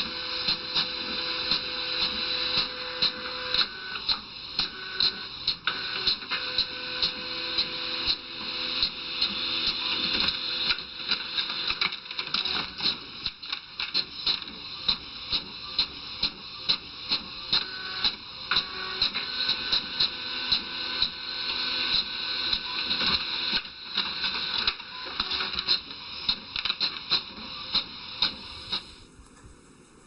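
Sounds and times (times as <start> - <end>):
steady whirring: 27.6 - 30.0.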